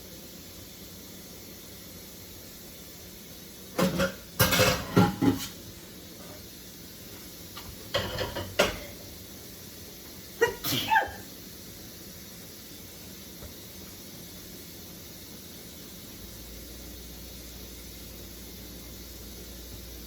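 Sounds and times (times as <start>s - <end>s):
person sneezing: 10.4s - 11.3s.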